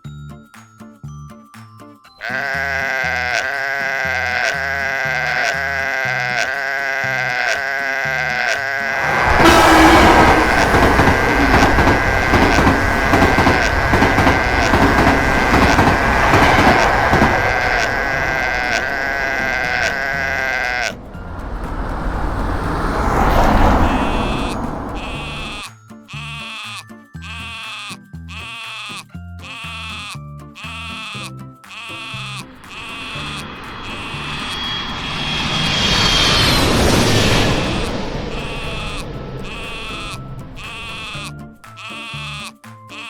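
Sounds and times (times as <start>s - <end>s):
passing train rumble: 8.3s - 25.6s, 32.4s - 41.6s.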